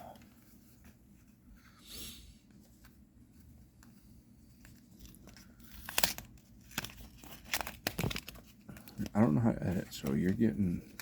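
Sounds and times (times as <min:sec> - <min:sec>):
wrapper crinkling and tearing: 0:04.7 - 0:11.0.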